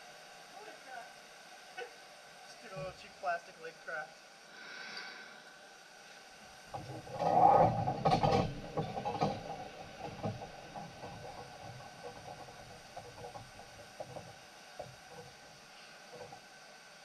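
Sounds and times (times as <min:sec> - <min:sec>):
light knocks and clicks: 0:06.7 - 0:15.4
handling knocks and rattling: 0:06.7 - 0:16.4.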